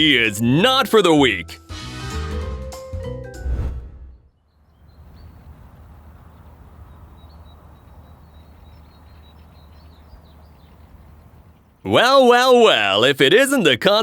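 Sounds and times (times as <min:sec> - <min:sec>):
low rumble: 0:03.4 - 0:04.2.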